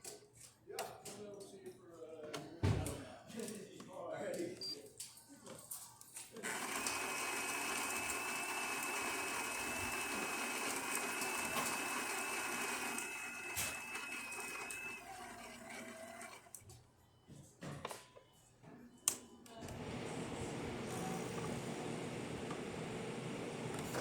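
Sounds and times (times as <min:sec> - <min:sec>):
espresso machine whirring: 0:06.4 - 0:16.5, 0:19.6 - 0:24.0.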